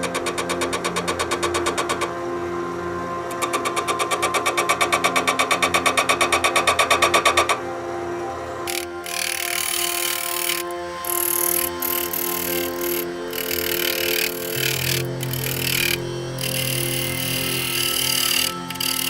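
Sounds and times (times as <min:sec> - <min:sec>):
lathe tool tapping spinning wood: 0:08.7 - 0:19.0.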